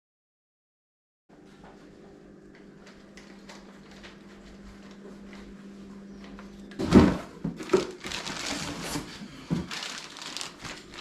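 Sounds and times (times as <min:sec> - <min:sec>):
clattering and rustling: 0:06.8 - 0:11.0.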